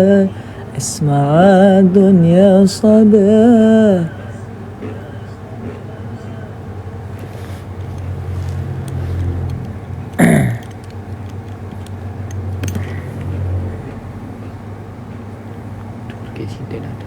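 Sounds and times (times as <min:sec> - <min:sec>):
road noise: 0:00.0 - 0:17.0
vehicle engine rumble: 0:05.6 - 0:17.0.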